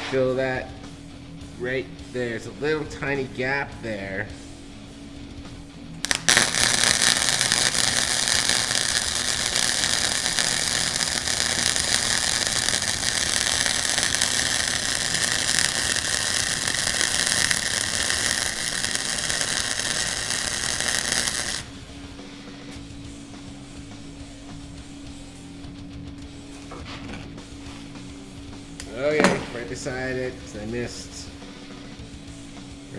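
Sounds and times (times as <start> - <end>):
welding arc crackling: 6.0 - 23.0.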